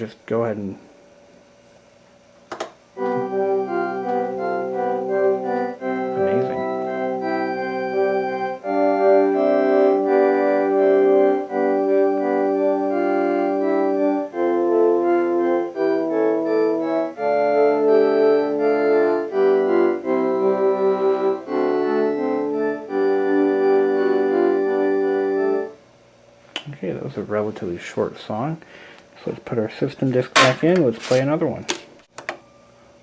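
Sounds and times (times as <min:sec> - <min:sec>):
synthesizer organ chords: 0:03.0 - 0:25.8.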